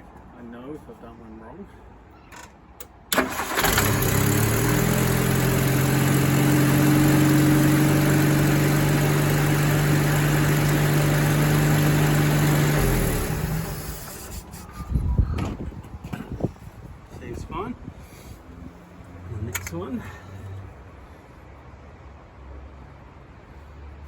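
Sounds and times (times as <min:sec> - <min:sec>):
car engine starting and idling: 0:03.1 - 0:14.5.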